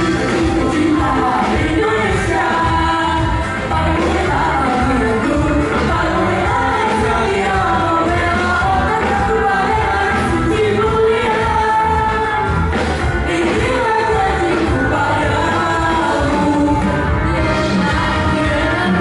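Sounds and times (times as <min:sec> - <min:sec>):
instrumental backing: 0:00.0 - 0:19.0
vocal group singing: 0:00.0 - 0:19.0.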